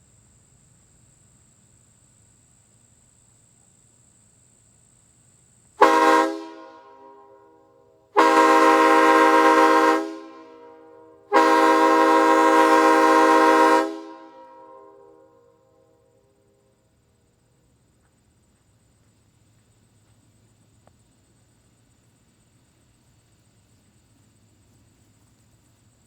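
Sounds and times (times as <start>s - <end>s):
train horn blasts: 5.8s - 15.7s.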